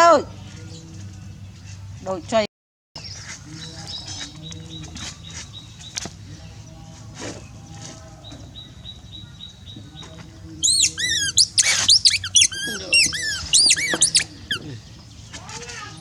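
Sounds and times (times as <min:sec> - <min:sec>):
monkey squeaking: 0:10.6 - 0:14.8.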